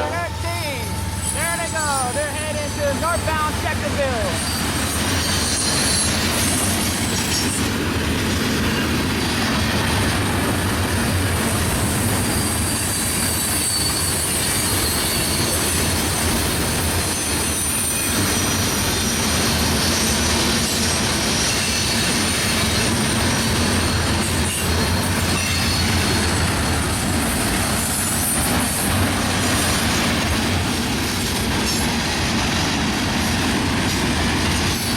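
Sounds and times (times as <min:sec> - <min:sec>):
train wheels rumbling on rail: 0:00.0 - 0:34.9
wheel squeal: 0:04.4 - 0:07.7, 0:11.9 - 0:23.0, 0:23.6 - 0:26.9.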